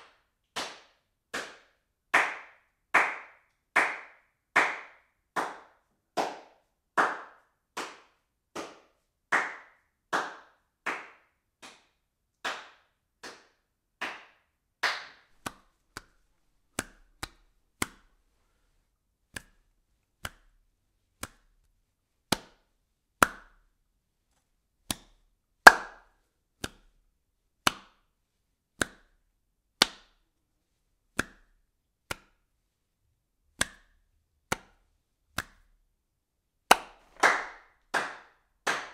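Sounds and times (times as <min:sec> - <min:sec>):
hand claps: 0:00.0 - 0:18.1, 0:19.3 - 0:19.6, 0:20.2 - 0:20.6, 0:21.2 - 0:21.5, 0:22.3 - 0:23.6, 0:24.9 - 0:26.9, 0:27.6 - 0:28.0, 0:28.8 - 0:29.1, 0:29.8 - 0:30.2, 0:31.2 - 0:32.4, 0:33.6 - 0:34.8, 0:35.4 - 0:35.7, 0:36.7 - 0:38.9.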